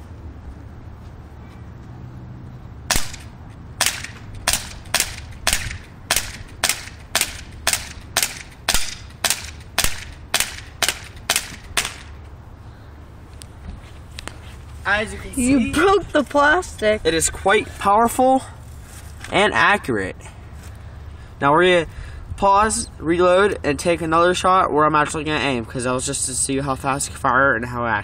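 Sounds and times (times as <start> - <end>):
airsoft pistol shots: 2.9 - 12.2.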